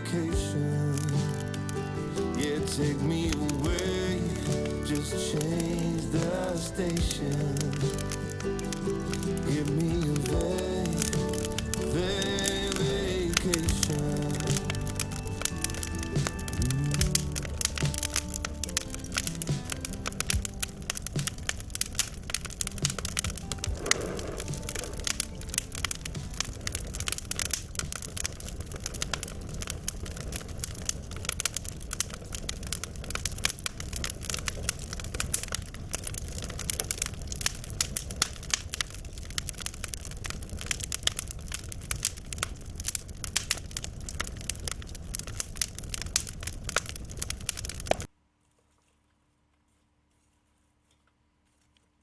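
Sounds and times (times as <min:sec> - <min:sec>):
low rumble: 0:00.0 - 0:30.9
fire crackling and popping: 0:00.0 - 0:48.1.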